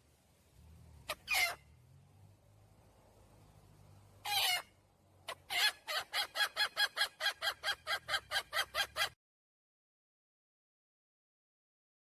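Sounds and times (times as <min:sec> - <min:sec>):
hen clucking: 0:01.0 - 0:01.6, 0:04.2 - 0:09.2
hen call: 0:04.2 - 0:09.2.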